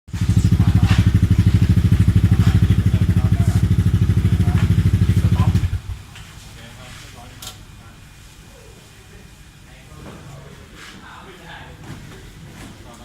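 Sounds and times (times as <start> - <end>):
scooter engine idling: 0.1 - 6.0.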